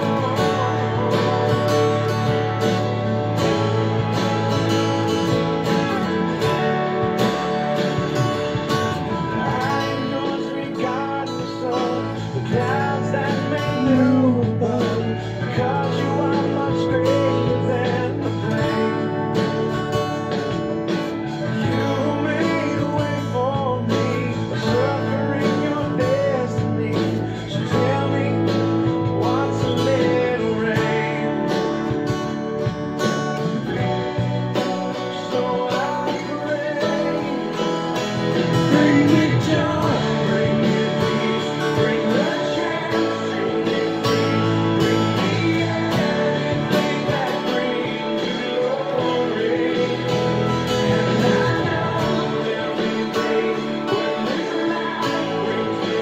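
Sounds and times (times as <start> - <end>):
guitar-led worship song: 0.0 - 56.0.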